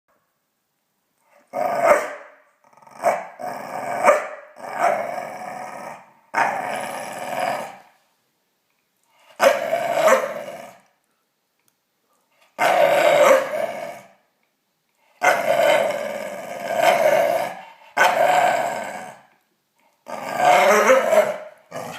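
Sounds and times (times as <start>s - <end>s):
dog play growling: 2.6s - 4.0s, 4.6s - 7.8s, 15.2s - 21.9s.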